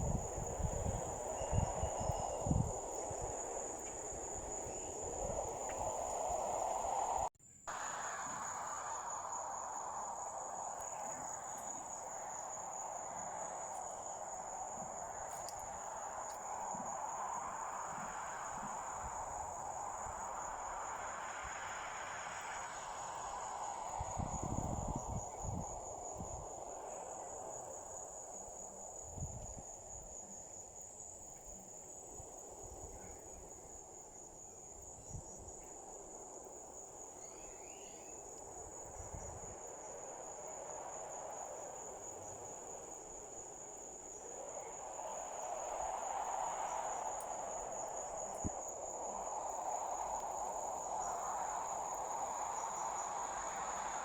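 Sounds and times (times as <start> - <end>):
low rushing noise: 0.0 - 28.4
crickets chirring: 0.0 - 54.0.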